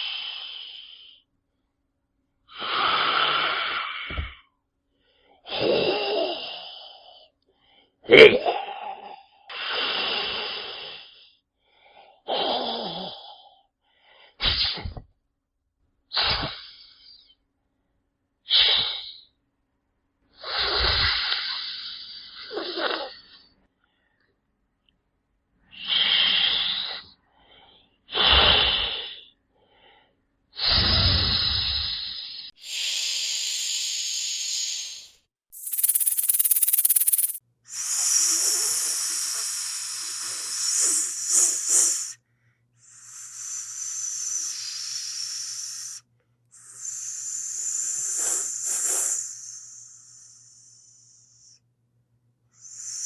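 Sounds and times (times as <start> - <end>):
snake hissing: 32.6 - 35.0, 35.6 - 37.4.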